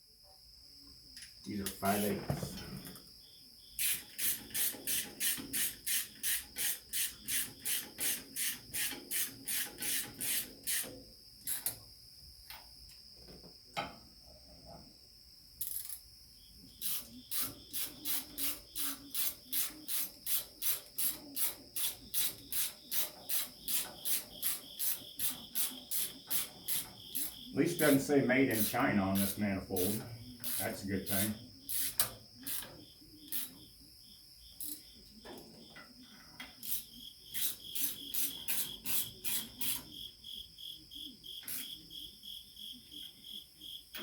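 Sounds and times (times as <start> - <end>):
ratchet wrench clicking: 3.8 - 11.8, 15.6 - 16.0, 16.8 - 27.4, 28.5 - 33.6, 34.6 - 34.9, 36.5 - 39.9, 41.4 - 41.7.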